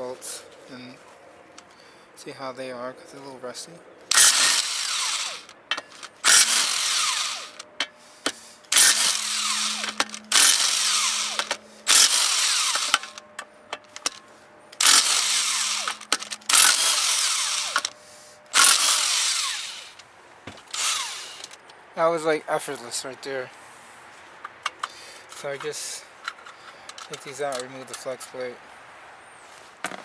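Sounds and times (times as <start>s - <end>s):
cordless impact wrench hammering: 4.1s - 14.2s, 14.8s - 17.9s, 18.5s - 21.6s.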